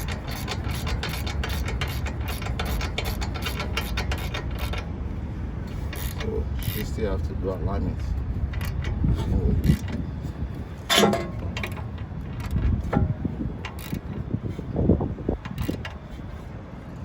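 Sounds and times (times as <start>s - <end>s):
loud metal clank: 10.9s - 11.8s.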